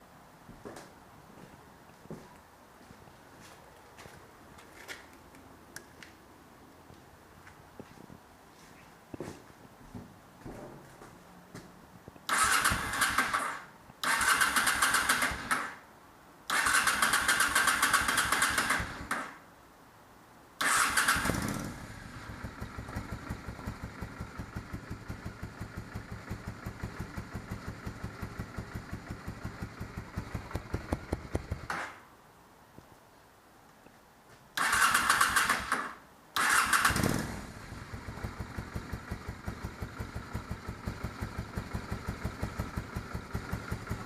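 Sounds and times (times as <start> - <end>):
engine cranking: 20.6 - 21.8, 34.6 - 35.8, 36.4 - 37.4.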